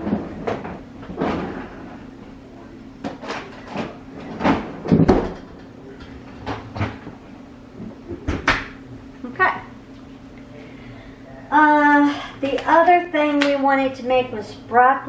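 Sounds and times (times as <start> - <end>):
steady low hum: 0.0 - 15.0
kitchen knocks and clunks: 3.0 - 7.2, 7.8 - 8.8.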